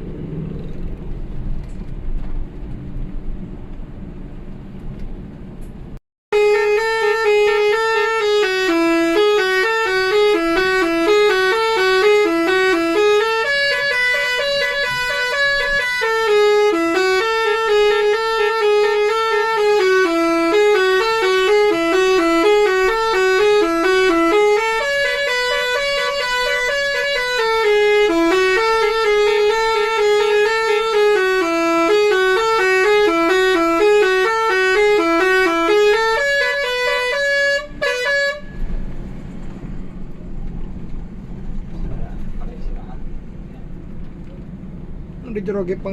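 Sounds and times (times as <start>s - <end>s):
musical bus horn melody: 6.3s - 40.0s.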